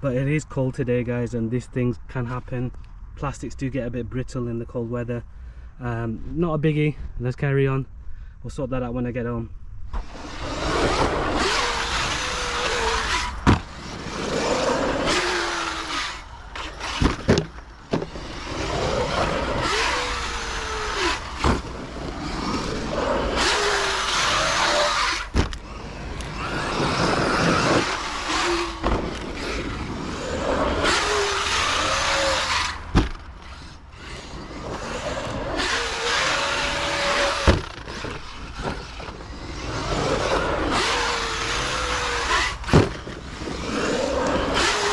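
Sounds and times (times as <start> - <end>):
electric motor whining: 9.9 - 44.9.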